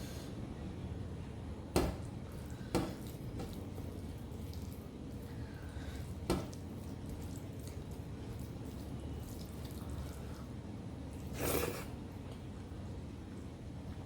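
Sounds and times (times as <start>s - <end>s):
wet chewing and mouth noises: 6.5s - 12.5s.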